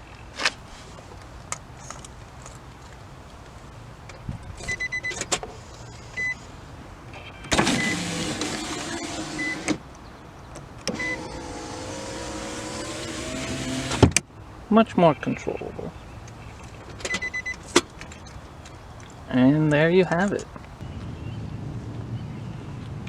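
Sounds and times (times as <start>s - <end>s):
power window motor running: 7.2s - 14.2s.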